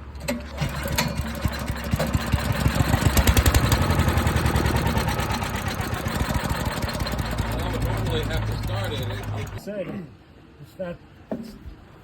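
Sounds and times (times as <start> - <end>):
small gasoline engine running: 0.1 - 9.6.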